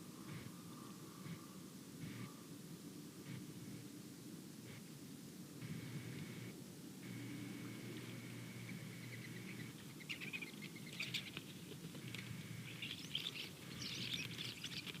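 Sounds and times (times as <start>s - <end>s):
faint steady hum: 0.0s - 15.0s
birds chirping: 7.2s - 15.0s.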